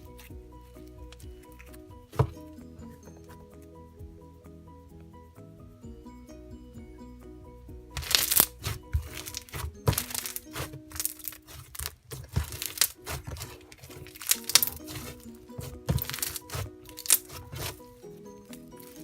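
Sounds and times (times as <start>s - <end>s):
light background music: 0.0s - 19.0s
slime crackling and popping: 8.0s - 17.8s.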